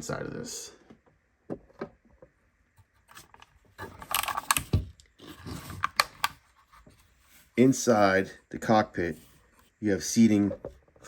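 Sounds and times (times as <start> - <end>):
plastic rubbing and scraping: 2.8 - 7.8.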